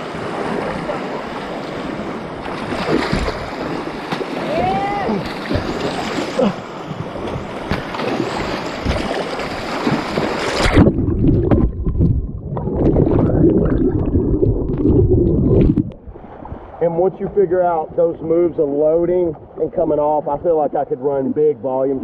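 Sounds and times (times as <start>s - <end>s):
whitewater rushing and splashing: 0.0s - 12.0s.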